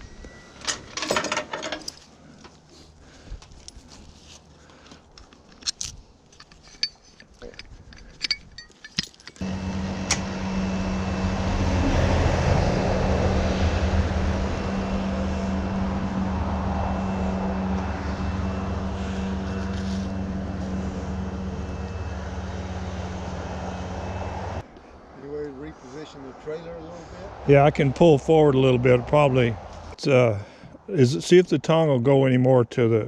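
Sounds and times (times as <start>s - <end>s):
motor engine droning: 9.4s - 24.6s.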